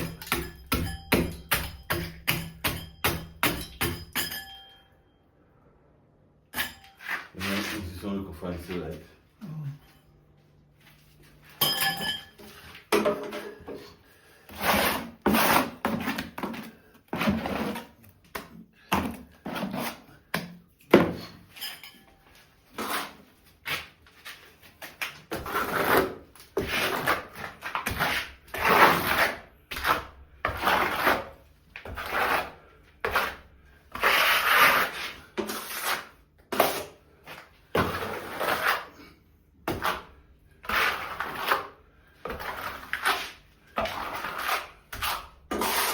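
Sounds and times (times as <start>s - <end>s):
hand tool scraping strokes: 6.6s - 8.2s, 13.5s - 18.0s, 25.3s - 39.2s, 39.8s - 45.9s.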